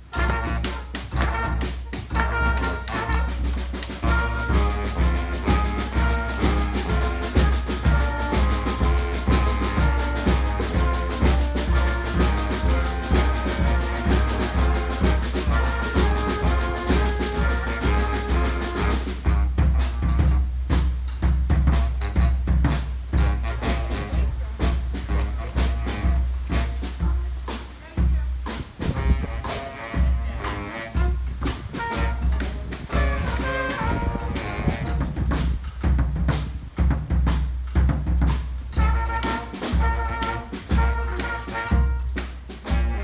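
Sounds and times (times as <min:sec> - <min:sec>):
bass drum and snare beat: 0:00.0 - 0:43.0
brass band horns: 0:00.0 - 0:43.0.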